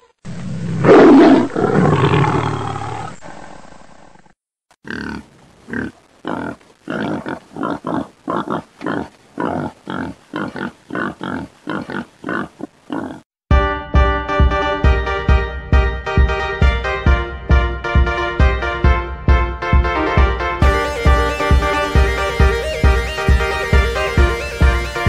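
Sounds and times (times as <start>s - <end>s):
wild animal growling: 0.3s - 4.3s.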